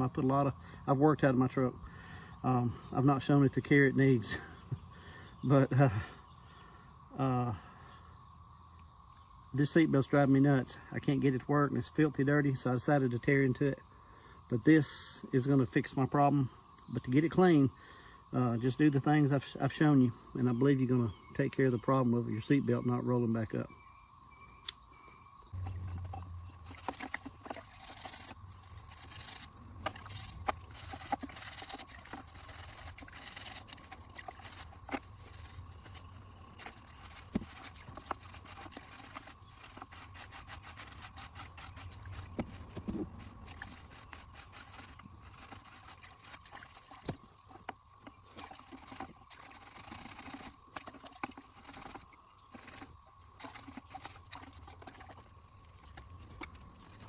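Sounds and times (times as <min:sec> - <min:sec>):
faint steady high tone: 0:21.3 - 0:26.6
bristle brush scrubbing: 0:26.0 - 0:55.0.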